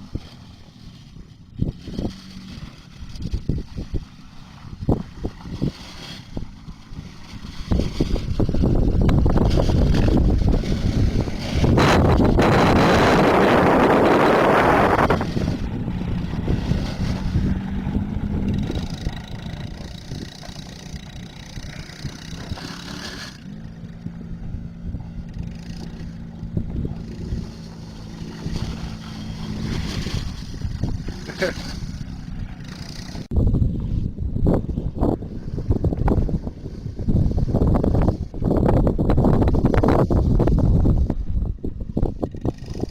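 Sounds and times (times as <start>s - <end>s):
wind noise on microphone: 0.0s - 42.9s
small engine running: 5.6s - 33.3s.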